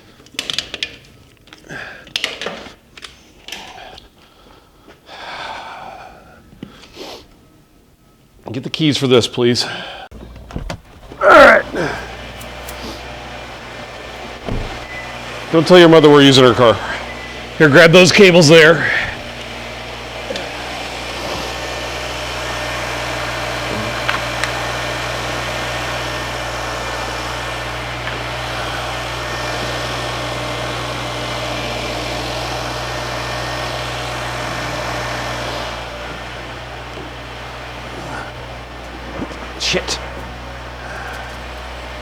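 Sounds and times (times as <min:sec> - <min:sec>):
car engine idling: 0:10.1 - 0:42.0.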